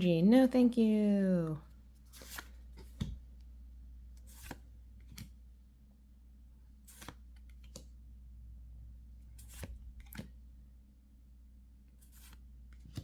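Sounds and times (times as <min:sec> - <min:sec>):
cards swishing and clicking: 0:02.0 - 0:03.2, 0:04.2 - 0:05.4, 0:06.8 - 0:07.9, 0:09.3 - 0:10.4, 0:12.0 - 0:13.0.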